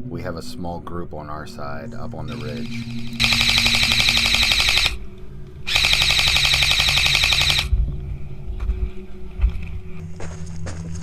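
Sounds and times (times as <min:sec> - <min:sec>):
airsoft rifle firing full-auto: 0:02.3 - 0:05.0, 0:05.7 - 0:07.7.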